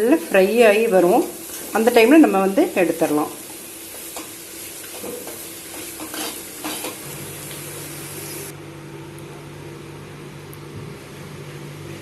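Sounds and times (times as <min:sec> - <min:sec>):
potatoes sizzling in hot oil: 0:00.0 - 0:08.5.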